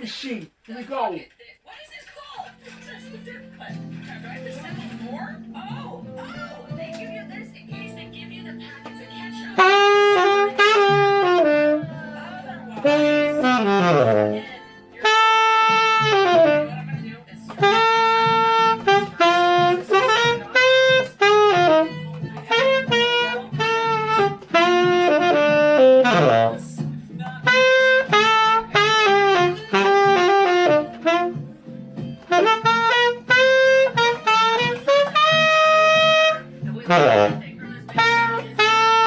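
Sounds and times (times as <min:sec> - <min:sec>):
karaoke backing track: 0:01.9 - 0:39.0
tenor saxophone playing: 0:07.8 - 0:39.0.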